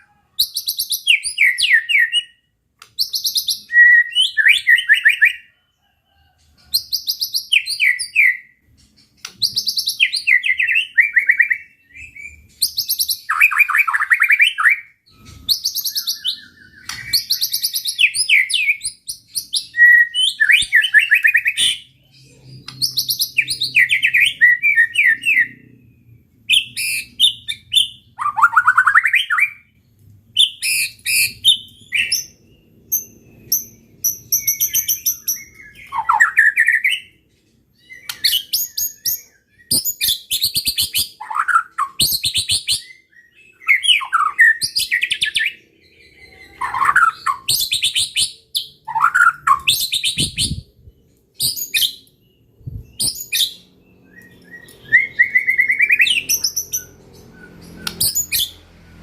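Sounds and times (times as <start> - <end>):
songbird singing trills and whistles: 0.0 - 29.8, 30.4 - 58.7.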